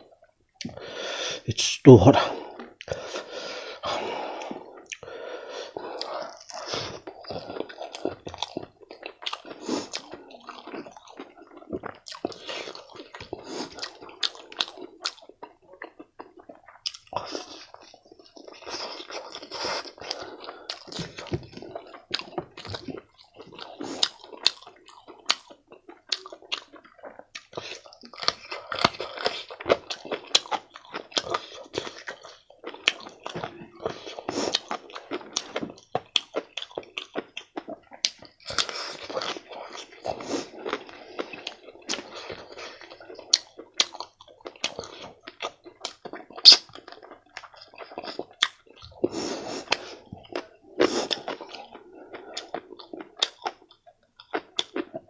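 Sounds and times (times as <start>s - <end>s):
wet mouth smacks while eating: 46.4s - 46.8s.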